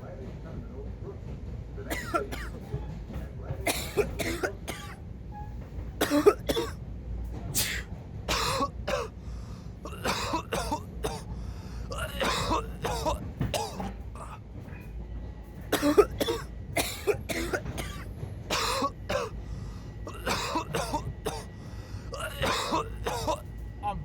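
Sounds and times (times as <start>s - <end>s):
person coughing: 1.9s - 2.6s, 3.7s - 5.0s, 6.0s - 6.8s, 7.6s - 9.2s, 9.9s - 11.3s, 11.9s - 14.4s, 15.8s - 19.4s, 20.1s - 21.5s, 22.1s - 23.4s
throat clearing: 1.9s - 2.6s, 3.7s - 5.0s, 6.0s - 6.8s, 7.6s - 9.2s, 9.9s - 11.3s, 11.9s - 14.4s, 15.8s - 19.4s, 20.1s - 21.5s, 22.1s - 23.4s.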